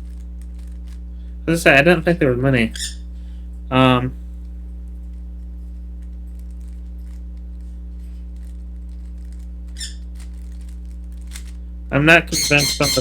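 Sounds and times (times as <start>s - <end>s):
low electrical hum: 0.0s - 13.0s
bird chirp: 12.3s - 13.0s.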